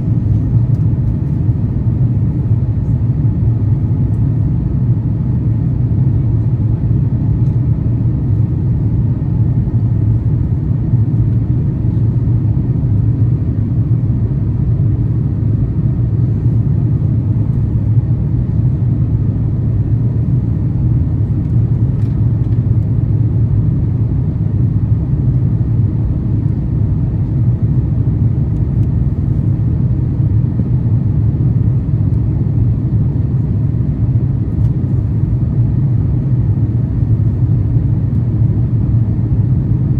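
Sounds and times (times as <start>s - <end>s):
aircraft cabin engine rumble: 0.0s - 39.9s.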